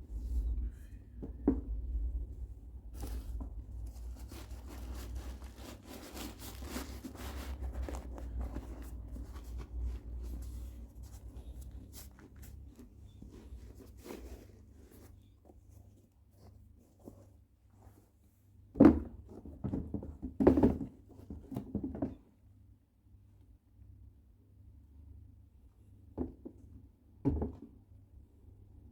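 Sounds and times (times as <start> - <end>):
low hum: 0.0 - 4.3
packaging rustling and scraping: 2.9 - 18.0.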